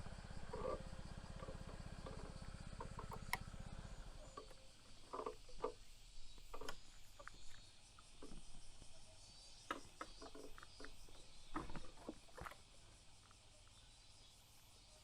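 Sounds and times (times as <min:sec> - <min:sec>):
pulsing engine rumble: 0:00.0 - 0:07.6.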